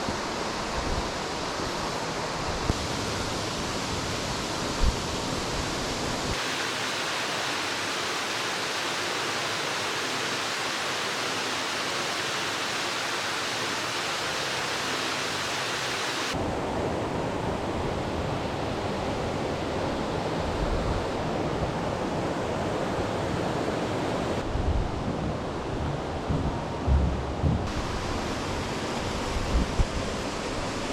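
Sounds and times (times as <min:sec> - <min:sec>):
waterfall rushing: 0:06.3 - 0:16.4, 0:25.5 - 0:30.9
wind buffeting microphone: 0:24.4 - 0:30.2.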